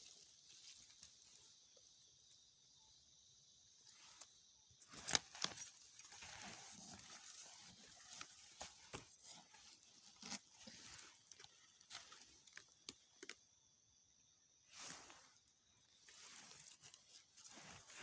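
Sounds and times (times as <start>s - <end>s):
dry leaves rustling and crackling: 0.0s - 1.7s, 4.9s - 12.6s
high insect drone: 0.0s - 18.0s.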